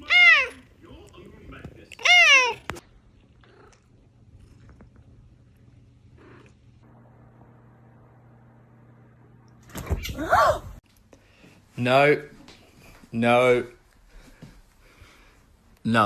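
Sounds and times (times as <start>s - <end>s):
cat purring: 2.7s - 6.9s.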